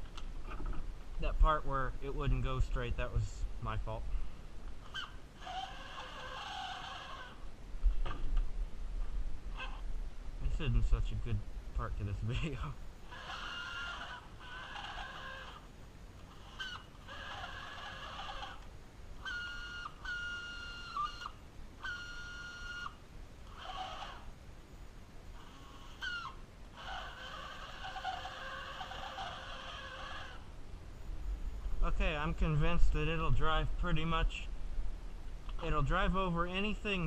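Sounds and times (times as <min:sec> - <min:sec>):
toy car motor whining: 0:04.8 - 0:07.4, 0:13.0 - 0:24.3, 0:25.3 - 0:30.5.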